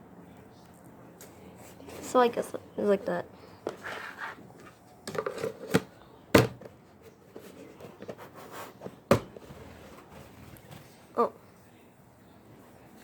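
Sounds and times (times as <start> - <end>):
hard objects knocking: 4.6 - 10.3.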